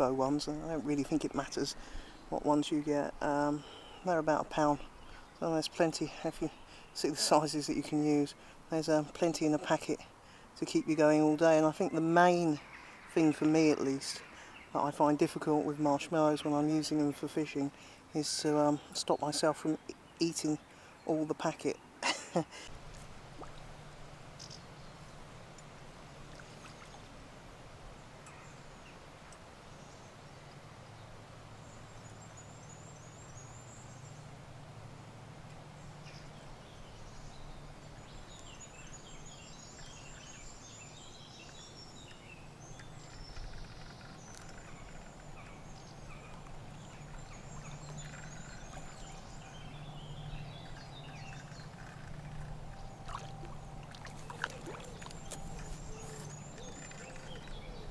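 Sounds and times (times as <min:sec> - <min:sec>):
small birds chirping: 0:00.0 - 0:25.7, 0:28.0 - 0:34.4, 0:35.4 - 0:57.9
steady low hum: 0:44.6 - 0:57.9.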